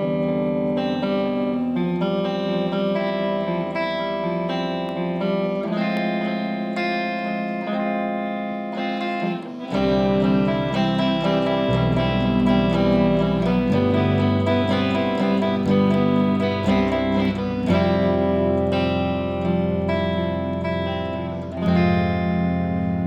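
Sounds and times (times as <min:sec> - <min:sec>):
guitar with effects: 0:00.0 - 0:23.0
bass line: 0:09.7 - 0:23.0.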